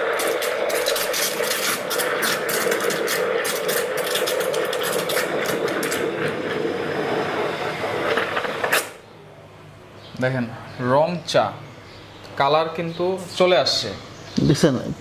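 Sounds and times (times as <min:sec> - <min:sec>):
espresso machine pump buzzing: 0:00.0 - 0:09.0.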